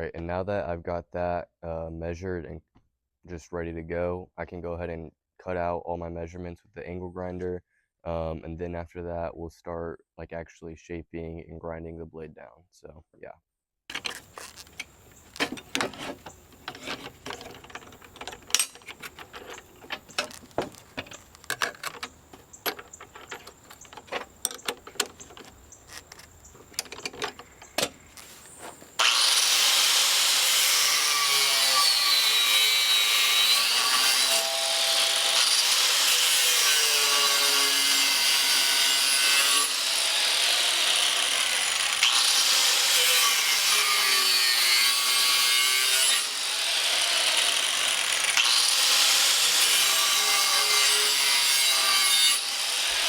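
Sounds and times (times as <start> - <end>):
clicks and knocks: 13.9 - 28.0
angle grinder cutting steel: 13.9 - 53.0.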